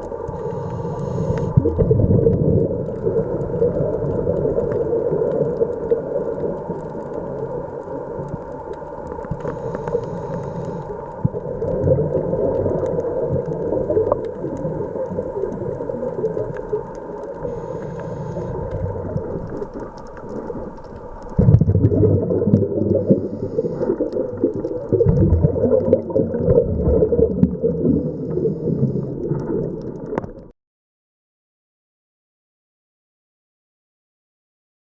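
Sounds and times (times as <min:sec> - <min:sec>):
exhaled bubbles rumbling underwater: 0:00.0 - 0:30.5
regulator breathing hisses: 0:00.3 - 0:01.6, 0:09.4 - 0:11.0, 0:17.4 - 0:18.7, 0:23.0 - 0:24.0.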